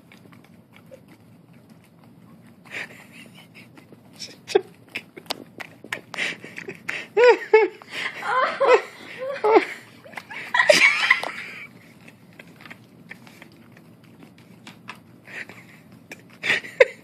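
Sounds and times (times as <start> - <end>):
person laughing: 2.7 - 11.7, 15.3 - 17.0.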